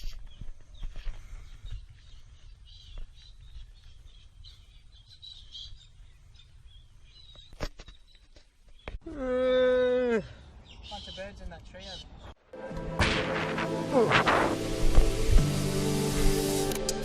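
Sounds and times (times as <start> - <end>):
birds chirping: 0.0 - 9.1, 10.2 - 12.4.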